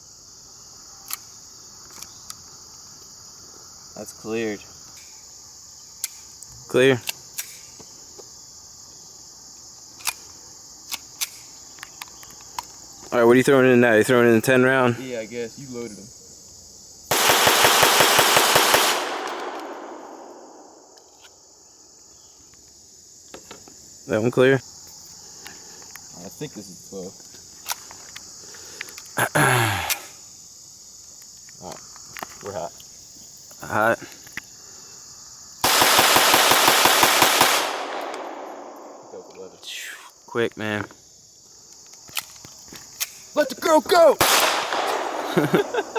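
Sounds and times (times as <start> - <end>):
rapid pistol shots: 17.1 - 20.7, 35.6 - 39.1, 44.2 - 45.3
gunshot echoes: 17.1 - 20.9, 35.7 - 39.3, 44.2 - 45.3.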